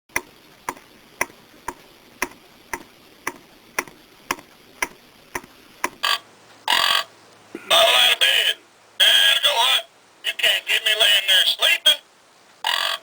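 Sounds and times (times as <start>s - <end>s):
alarm clock ticking: 0.2s - 6.0s.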